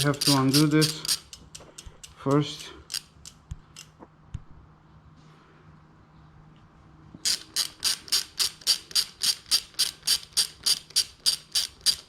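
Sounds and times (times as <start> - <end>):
ratchet clicking: 0.0 - 3.9, 7.2 - 12.0.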